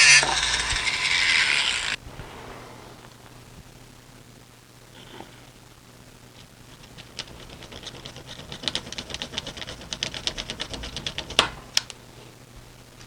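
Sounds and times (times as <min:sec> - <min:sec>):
light ticking tool strokes: 0:00.0 - 0:02.0.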